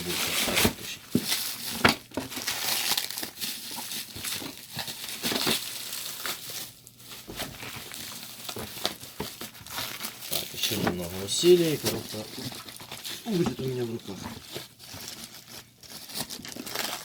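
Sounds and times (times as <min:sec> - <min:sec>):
packaging crinkling and crackling: 0:00.0 - 0:17.0.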